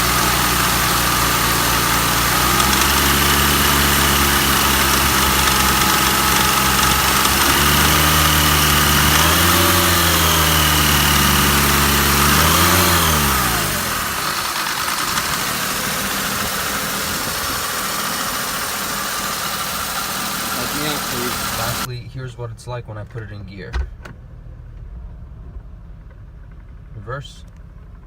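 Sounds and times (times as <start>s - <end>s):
car engine idling roughly: 0.0s - 21.9s.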